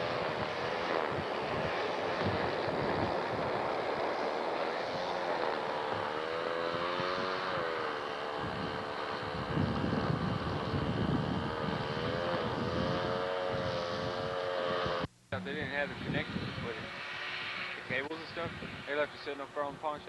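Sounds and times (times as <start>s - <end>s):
steam locomotive hiss and rumble: 15.4s - 20.0s.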